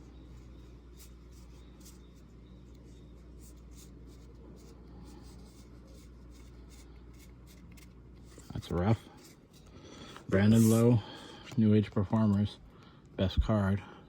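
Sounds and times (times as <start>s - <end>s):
steady low hum: 0.0s - 14.0s
cards rustling and sliding: 2.8s - 12.5s.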